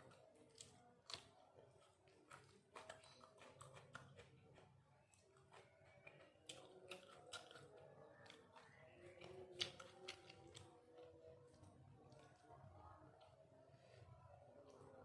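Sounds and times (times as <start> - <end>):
chewing clicks and smacks: 0.0 - 13.5.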